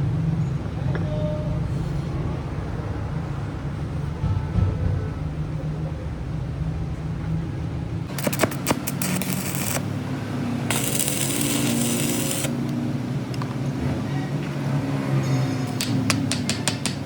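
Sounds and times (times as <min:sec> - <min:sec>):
steady machine hum: 0:07.6 - 0:13.3
hiss: 0:10.7 - 0:12.6.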